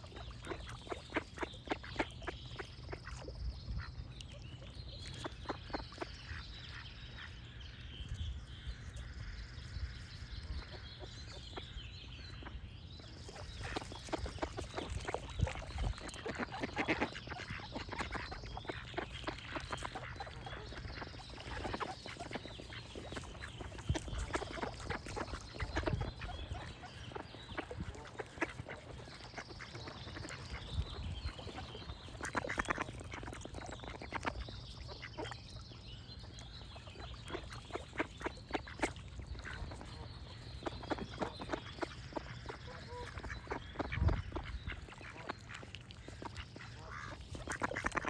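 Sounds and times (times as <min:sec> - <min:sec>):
birds singing: 0:00.0 - 0:48.0
ducks quacking: 0:13.4 - 0:35.4, 0:37.0 - 0:48.0.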